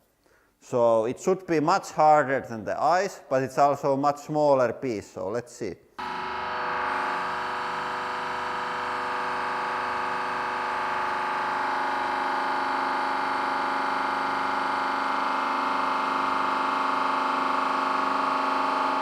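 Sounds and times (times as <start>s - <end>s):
hydraulic pump hum-whine: 6.0s - 19.0s.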